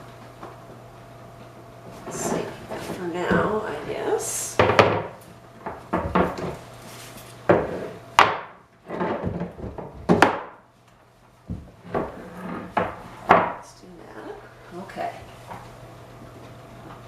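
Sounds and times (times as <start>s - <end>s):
hard objects knocking and clattering: 4.6s - 6.6s, 7.5s - 10.6s.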